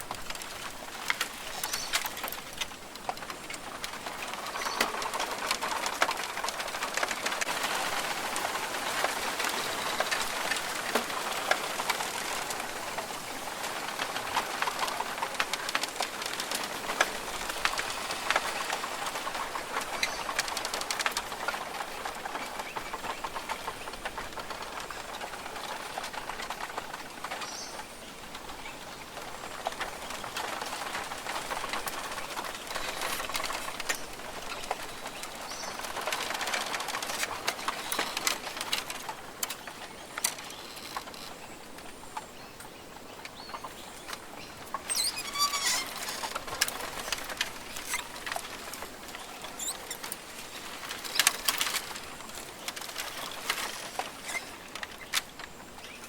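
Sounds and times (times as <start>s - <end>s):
rainforest hiss with pattering: 0.0s - 56.0s
bird calls: 1.4s - 2.3s, 17.7s - 56.0s.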